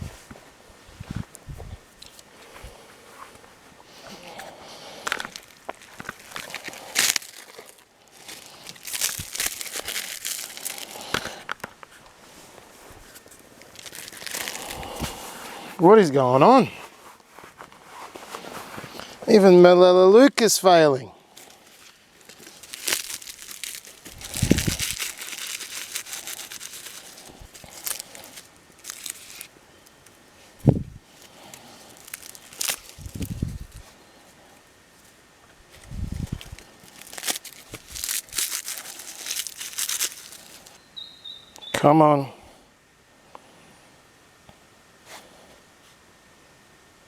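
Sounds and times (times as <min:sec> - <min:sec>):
paperbark tearing and crinkling: 0:04.1 - 0:11.4, 0:13.6 - 0:15.3, 0:21.4 - 0:30.2, 0:31.1 - 0:33.9, 0:35.7 - 0:40.8.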